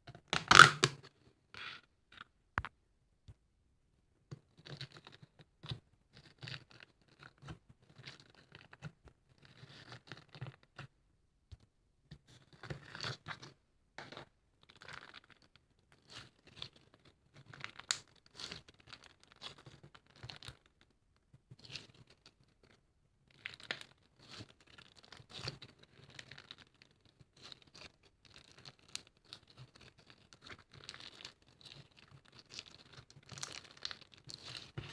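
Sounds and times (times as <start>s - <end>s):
scratching and crinkling handling noises: 12.2s - 34.9s.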